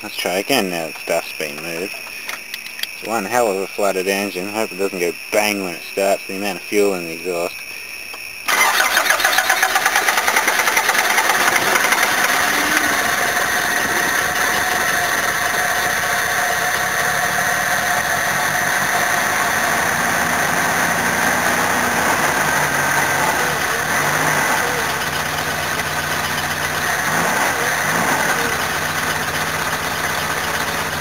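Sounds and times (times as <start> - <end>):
engine cranking and running: 8.5 - 31.0.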